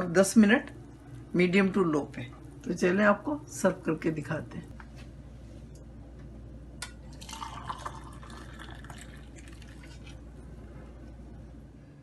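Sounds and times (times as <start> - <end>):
broth pouring into a cup: 7.0 - 10.7.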